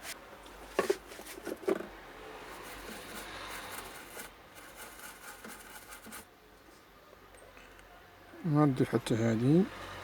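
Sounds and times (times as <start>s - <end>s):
faint rubbing and handling: 0.0s - 6.3s.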